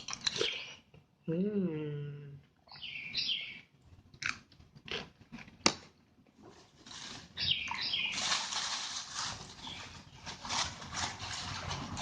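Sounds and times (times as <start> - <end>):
wet chewing: 0.0 - 0.8, 4.0 - 5.7.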